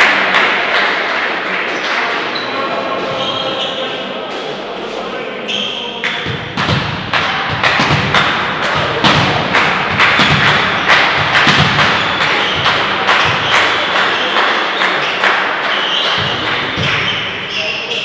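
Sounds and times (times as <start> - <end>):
spectators beating a rhythm: 5.9 - 17.5.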